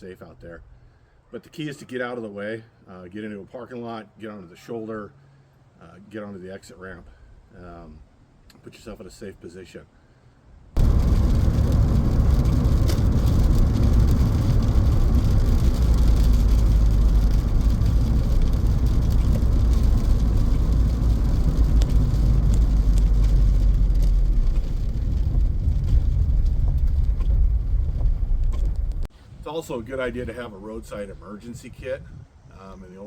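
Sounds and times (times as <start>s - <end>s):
highway traffic rumble: 10.2s - 31.2s.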